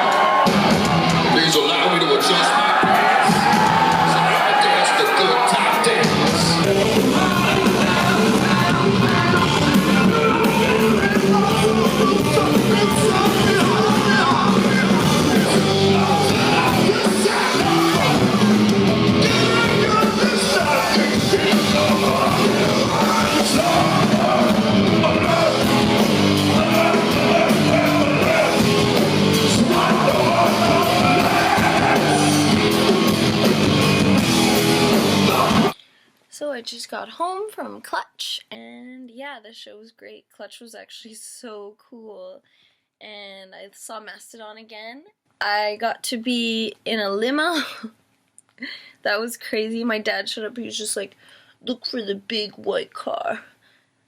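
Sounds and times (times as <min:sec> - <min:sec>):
singer yelling: 0:00.0 - 0:34.0, 0:34.8 - 0:35.8
heavy rock band playing: 0:00.0 - 0:35.8.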